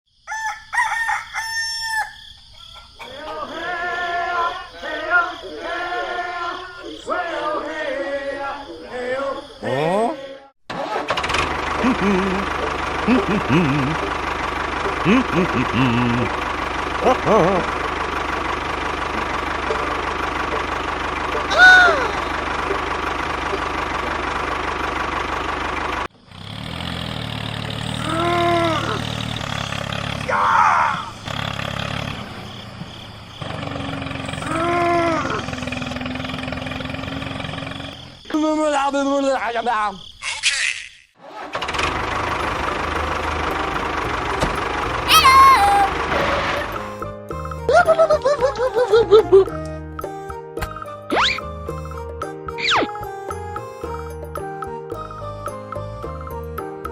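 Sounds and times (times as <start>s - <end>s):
rooster crowing: 0.2s - 6.6s, 45.1s - 45.9s
small engine knocking: 11.1s - 28.2s, 31.2s - 38.2s, 41.5s - 45.1s
steady engine hum: 11.1s - 38.3s, 41.6s - 50.4s
long held pitched calls: 21.4s - 22.6s, 33.5s - 38.2s, 44.9s - 46.1s
call rising and falling: 44.9s - 46.0s, 52.6s - 53.0s.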